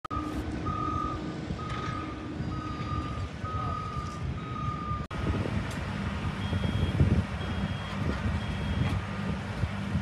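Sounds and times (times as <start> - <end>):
high-pitched backup alarm beeping: 0.1 - 5.1, 6.4 - 8.9
reversing alarms beeping: 0.1 - 5.1, 6.3 - 9.0
rumble of heavy vehicles: 0.1 - 10.0.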